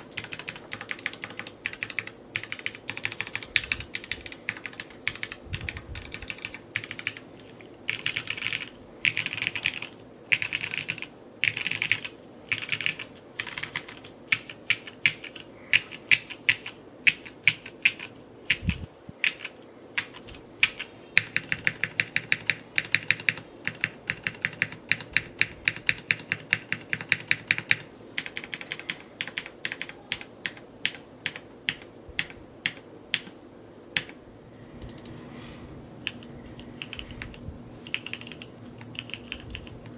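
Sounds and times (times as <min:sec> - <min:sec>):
typing on mechanical keyboard: 0:00.0 - 0:07.2, 0:07.9 - 0:33.3, 0:36.0 - 0:39.9.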